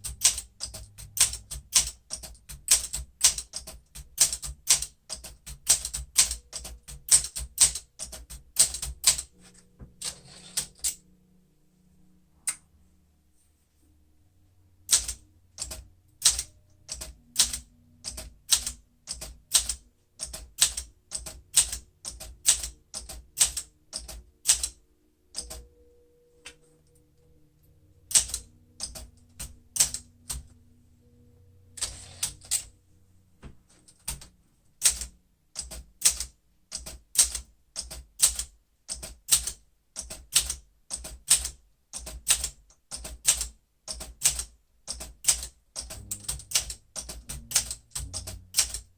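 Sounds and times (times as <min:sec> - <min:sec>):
manual typewriter typing: 0:00.0 - 0:11.0, 0:14.9 - 0:25.8, 0:28.0 - 0:30.6, 0:31.7 - 0:32.7, 0:33.7 - 0:48.9.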